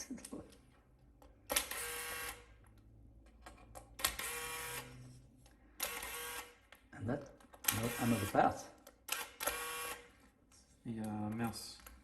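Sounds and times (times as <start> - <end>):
electric screwdriver whirring: 1.5 - 2.4, 4.0 - 4.9, 5.8 - 6.6, 9.1 - 10.1.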